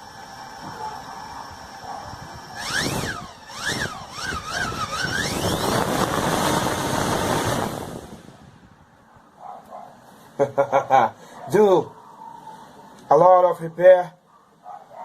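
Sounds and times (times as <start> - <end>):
small motor revving: 0.0 - 8.4
loud rushing noise: 3.8 - 8.8.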